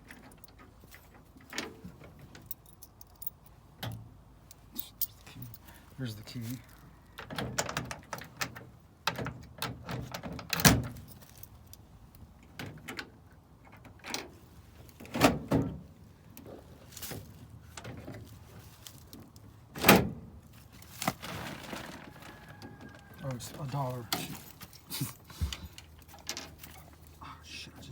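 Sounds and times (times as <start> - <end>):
keys jangling: 2.3 - 3.6, 4.7 - 5.8.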